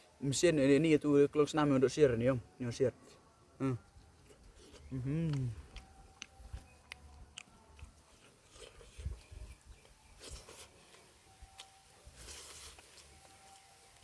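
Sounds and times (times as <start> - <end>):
close-up chewing: 3.0 - 14.0
wet mouth clicks: 4.8 - 7.5.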